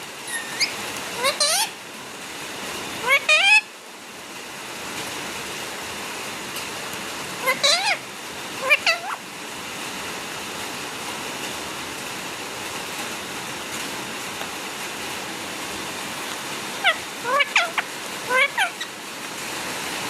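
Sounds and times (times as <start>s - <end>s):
parrot calling: 0.2s - 1.8s, 3.0s - 3.7s, 7.4s - 8.0s, 8.6s - 9.2s, 16.3s - 19.0s
steady rushing hiss: 8.0s - 20.0s.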